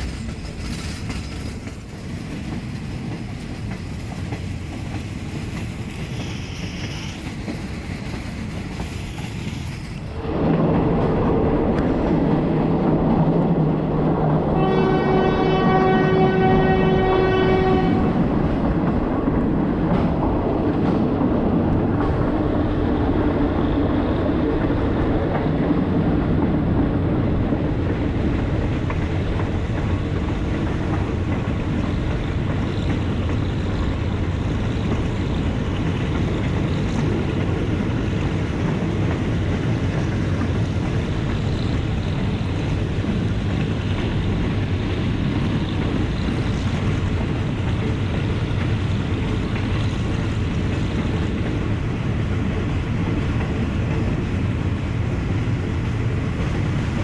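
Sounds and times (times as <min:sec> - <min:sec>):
train rumbling along track: 0:00.0 - 0:57.0
train horn blast: 0:14.4 - 0:18.4.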